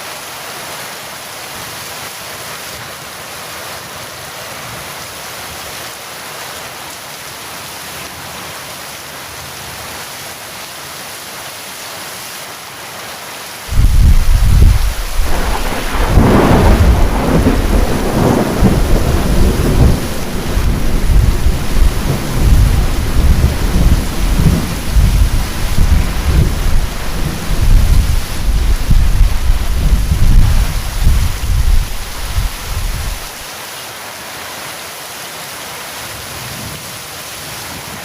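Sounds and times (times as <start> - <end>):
heavy rain hissing: 4.6 - 38.0
thunder rumbling: 13.7 - 33.4.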